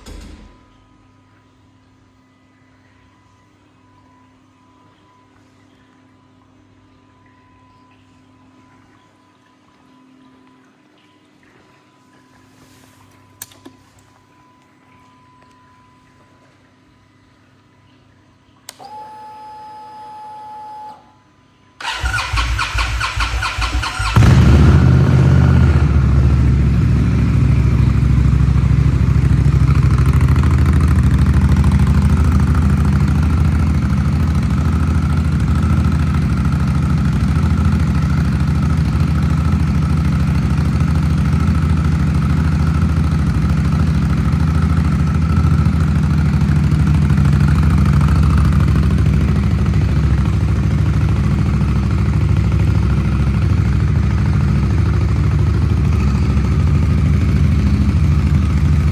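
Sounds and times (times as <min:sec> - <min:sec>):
motorcycle engine idling: 0:21.8 - 0:58.9.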